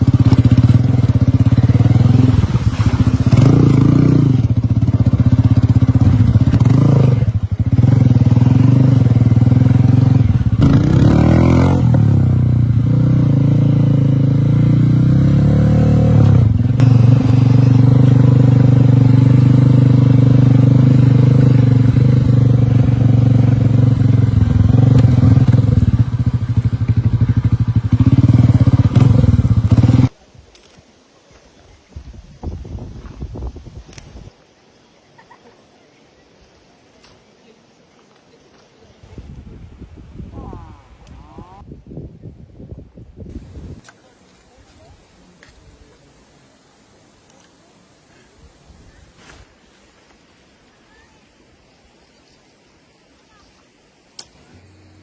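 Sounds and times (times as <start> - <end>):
motorcycle engine running: 0.0 - 30.2.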